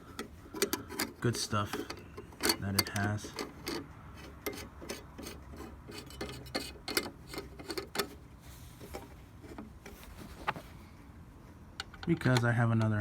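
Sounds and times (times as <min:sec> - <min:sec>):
handling clicks and taps: 0:00.0 - 0:03.8, 0:11.8 - 0:13.0.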